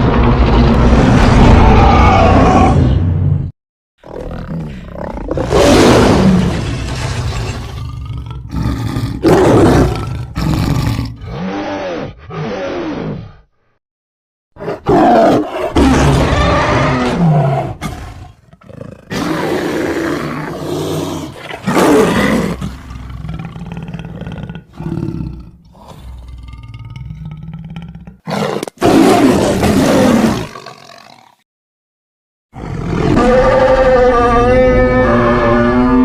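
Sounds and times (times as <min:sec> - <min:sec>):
tiger roaring: 0:04.0 - 0:06.6, 0:07.6 - 0:13.4, 0:14.6 - 0:31.4, 0:32.6 - 0:36.0.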